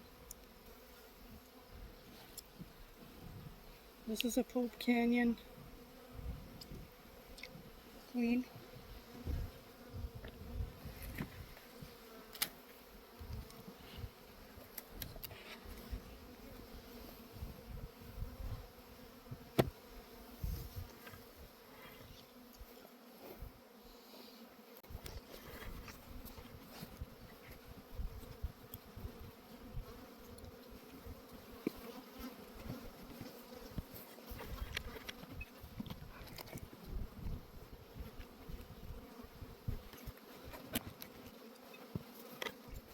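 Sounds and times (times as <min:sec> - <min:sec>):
honeybees buzzing: 0:00.0 - 0:42.9
clicks and knocks from hive handling: 0:09.3 - 0:13.7, 0:19.3 - 0:19.8, 0:29.9 - 0:37.3, 0:39.8 - 0:42.9.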